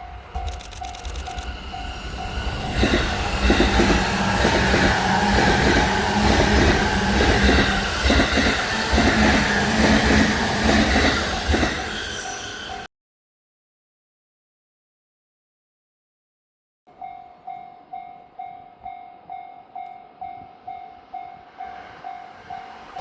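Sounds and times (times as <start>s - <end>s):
train motor hum: 0.0s - 12.8s
crossing warning bell ringing: 0.0s - 12.9s, 16.9s - 23.0s
train wheels clacking over rail joints: 0.4s - 12.8s.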